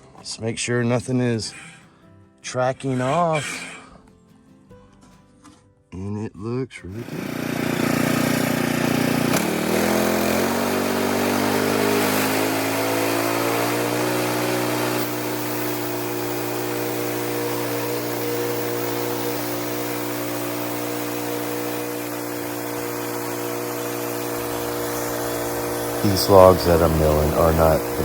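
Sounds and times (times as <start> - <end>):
sawmill engine revving: 6.9 - 28.0.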